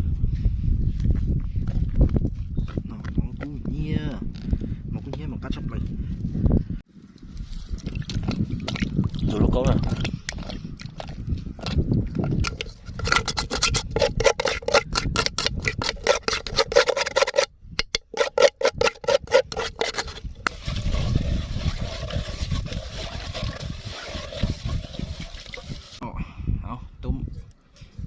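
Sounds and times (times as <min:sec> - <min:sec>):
rhythmic scraping strokes: 0:12.2 - 0:26.0.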